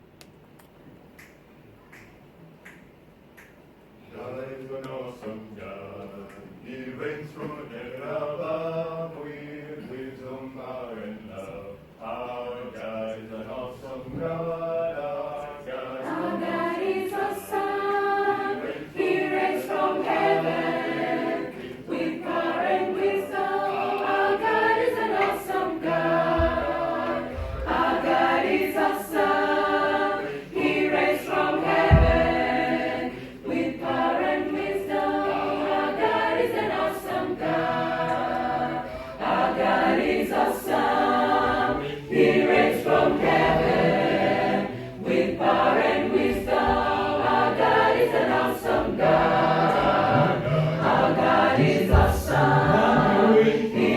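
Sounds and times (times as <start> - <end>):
choir singing in harmony: 4.0 - 53.9
low thumps: 26.2 - 28.2, 31.6 - 32.7, 49.2 - 53.4.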